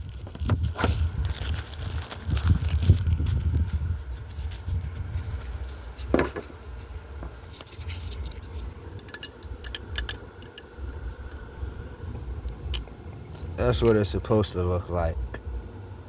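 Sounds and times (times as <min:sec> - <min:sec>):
clicks and scrapes of small parts: 0:07.4 - 0:10.7
low rumble: 0:07.8 - 0:16.0.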